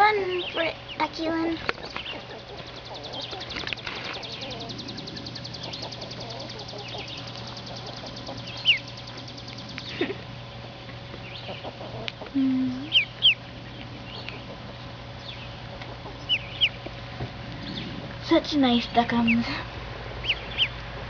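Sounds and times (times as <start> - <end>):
ducklings peeping: 0.0 - 21.0
low steady hum: 0.0 - 21.0
fast ticking trill: 1.7 - 10.1.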